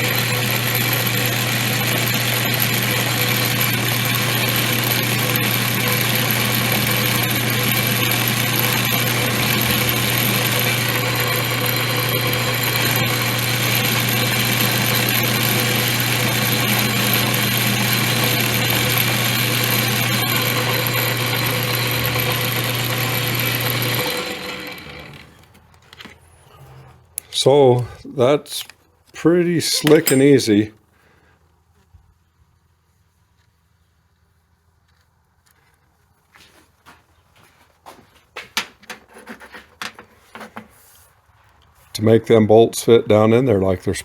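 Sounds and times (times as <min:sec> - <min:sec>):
metal lathe machining: 0:00.0 - 0:25.3.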